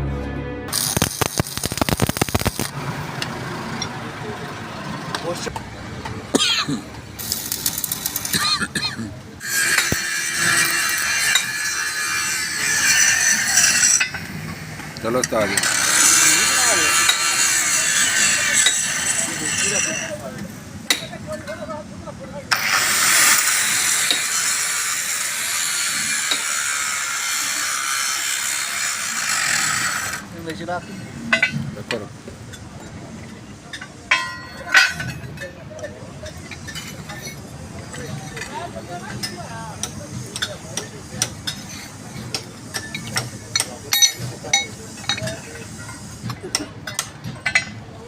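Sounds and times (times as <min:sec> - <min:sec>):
welding arc crackling hiss: 0:00.7 - 0:02.8, 0:07.2 - 0:08.4, 0:09.4 - 0:20.2, 0:22.5 - 0:30.3
metal striking metal: 0:33.7 - 0:35.4.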